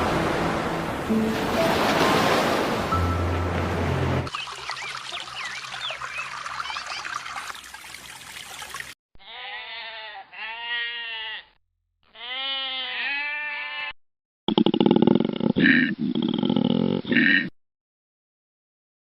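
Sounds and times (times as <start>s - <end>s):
water rushing: 0.0s - 9.0s
birds chirping: 4.0s - 7.6s
long wavering bleats: 9.2s - 14.0s.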